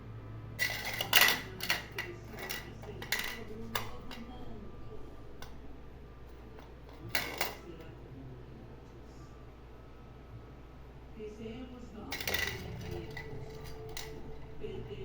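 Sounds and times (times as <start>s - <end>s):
hard objects clattering: 0.6s - 4.5s, 6.2s - 7.9s, 12.1s - 14.7s.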